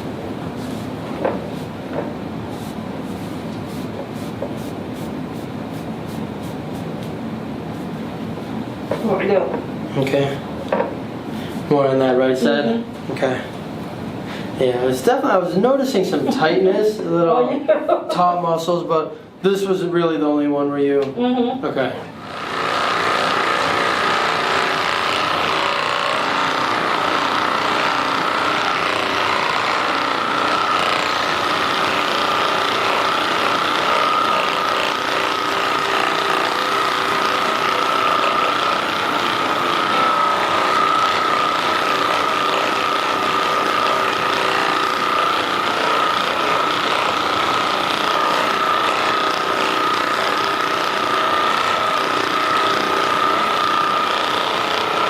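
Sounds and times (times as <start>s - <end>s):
massage gun buzzing: 22.2s - 55.0s.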